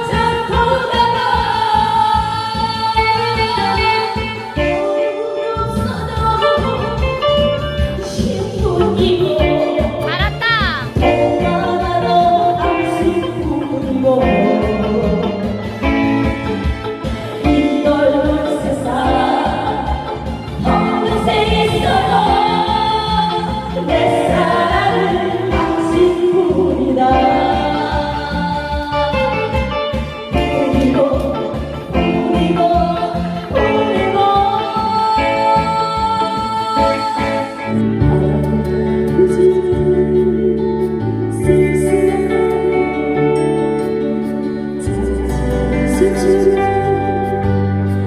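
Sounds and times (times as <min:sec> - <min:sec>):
song with singing and beat: 0:00.0 - 0:48.0.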